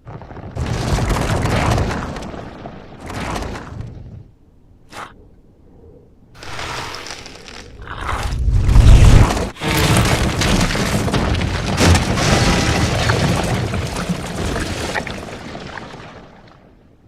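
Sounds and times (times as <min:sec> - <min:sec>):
explosion rumble and breaking: 0:00.0 - 0:04.3, 0:08.2 - 0:16.8.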